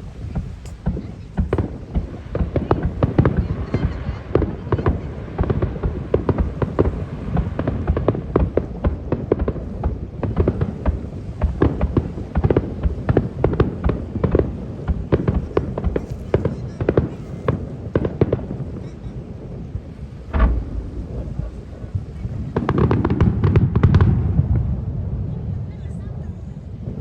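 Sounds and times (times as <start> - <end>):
firework boom: 0.0 - 25.7
fireworks cracking and banging: 0.0 - 27.0.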